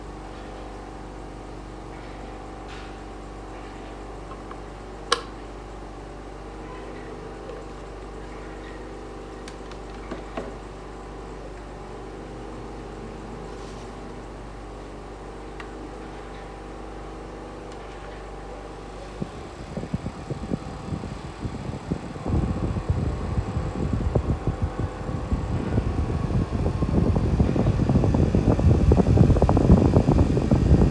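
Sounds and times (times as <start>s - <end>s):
fan motor humming: 0.0s - 30.9s.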